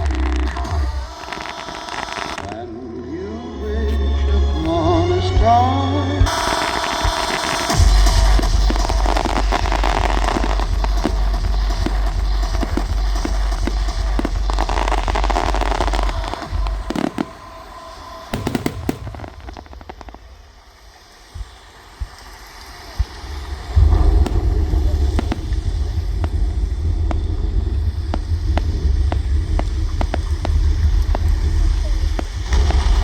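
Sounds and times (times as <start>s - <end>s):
fireworks booming: 0.0s - 2.5s, 6.2s - 33.0s
fireworks crackling: 0.0s - 2.5s, 6.2s - 33.0s.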